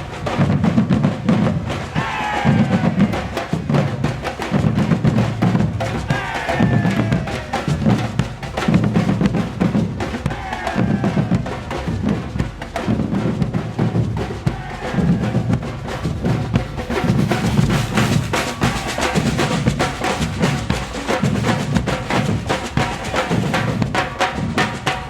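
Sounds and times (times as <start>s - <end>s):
deep bass drums: 0.0s - 24.6s
snare and higher drum strokes: 0.0s - 25.0s.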